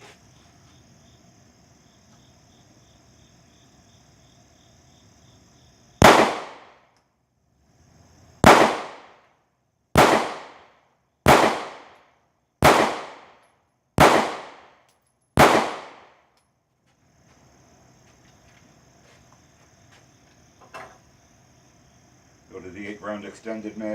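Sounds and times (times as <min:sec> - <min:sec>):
pistol shots: 0:06.0 - 0:06.9, 0:08.4 - 0:09.3, 0:10.0 - 0:16.2.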